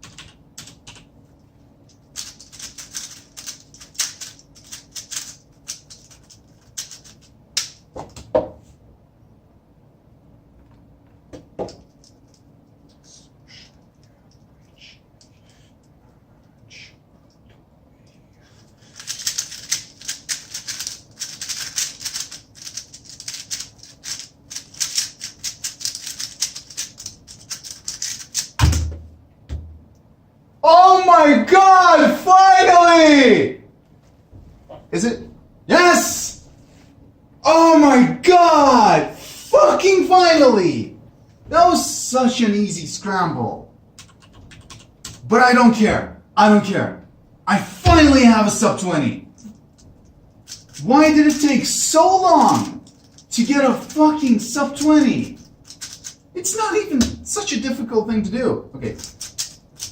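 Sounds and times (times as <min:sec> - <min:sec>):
puzzle cube plastic clicks: 0:01.9 - 0:07.8, 0:18.9 - 0:28.6, 0:49.5 - 0:51.4, 0:54.7 - 0:56.2, 0:59.0 - 0:59.9
loud thump: 0:28.6 - 0:29.9, 0:47.9 - 0:48.3.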